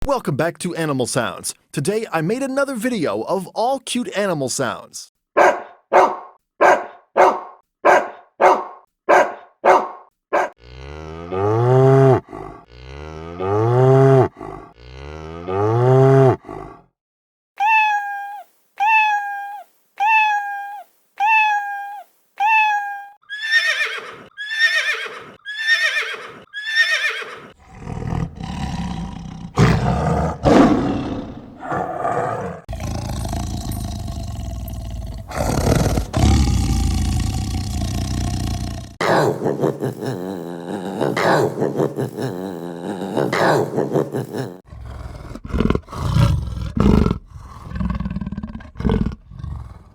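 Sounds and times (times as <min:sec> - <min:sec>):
dog barking: 0:05.4 - 0:10.6
long low roar: 0:10.6 - 0:16.8, 0:27.6 - 0:41.2, 0:44.7 - 0:49.9
short high animal calls: 0:17.6 - 0:27.4.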